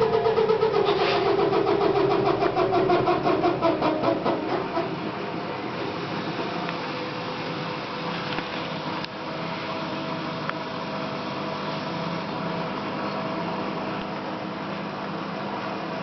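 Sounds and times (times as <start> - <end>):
washing machine hum: 0.0 - 16.0.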